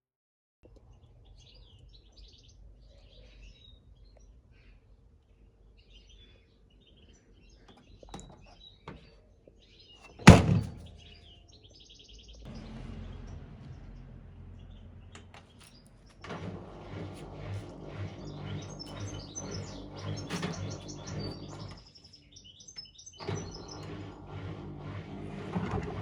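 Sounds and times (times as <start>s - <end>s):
faint birds chirping: 0.7s - 24.4s
loud sharp thump: 10.2s - 10.9s
steady low rumble: 12.5s - 16.0s.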